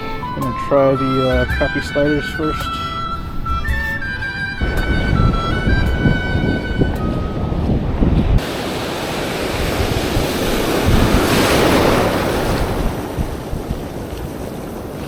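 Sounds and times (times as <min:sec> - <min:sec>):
wind buffeting microphone: 0:00.0 - 0:15.0
wave breaking on beach: 0:04.6 - 0:15.0.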